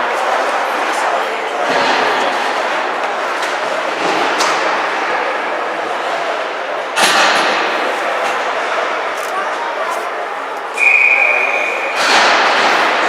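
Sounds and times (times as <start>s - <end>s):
arena crowd hubbub: 0.0s - 13.0s
sharp bang ringing in hall: 10.8s - 13.0s.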